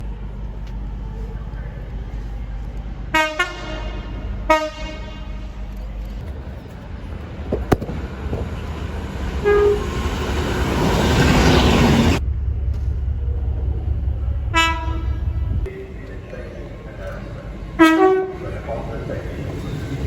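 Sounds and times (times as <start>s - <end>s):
train horn blasts: 3.1s - 5.7s, 9.4s - 10.2s, 14.5s - 16.0s, 17.8s - 18.6s
train rushing: 5.2s - 20.0s.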